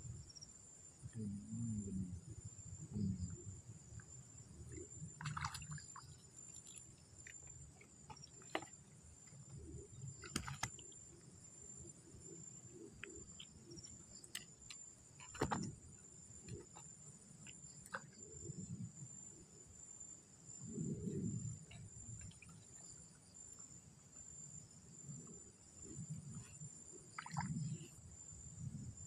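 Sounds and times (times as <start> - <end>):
insects chirring: 0.0 - 29.0.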